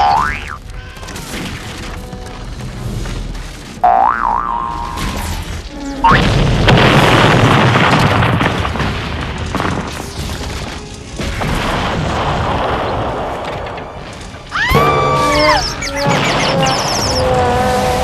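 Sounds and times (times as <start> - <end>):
music: 0.0 - 3.8.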